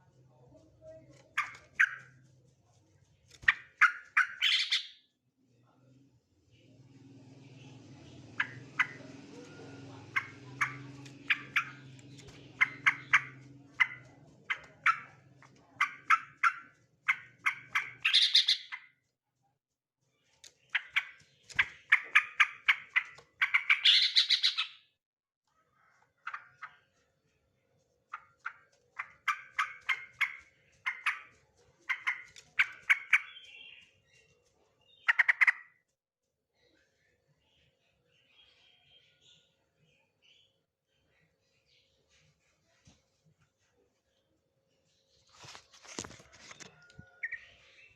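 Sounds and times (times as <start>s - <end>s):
bird chirping sharply: 3.6s - 5.0s, 15.8s - 18.9s, 20.8s - 24.8s.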